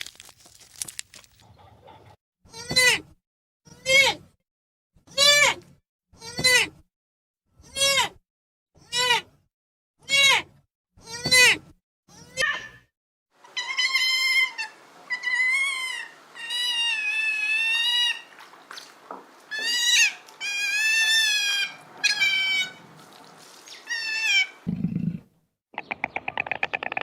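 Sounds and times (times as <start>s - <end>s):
animal crying out: 13.4s - 18.3s, 19.5s - 22.8s, 23.8s - 24.7s.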